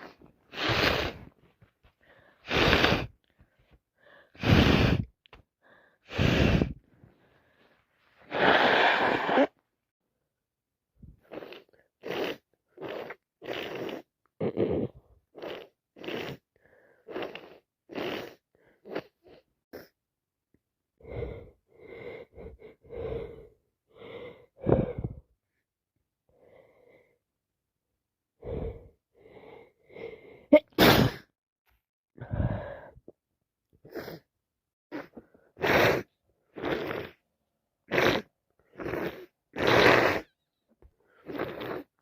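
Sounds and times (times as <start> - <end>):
person sneezing: 0.0 - 1.2, 8.3 - 9.6, 30.5 - 31.3.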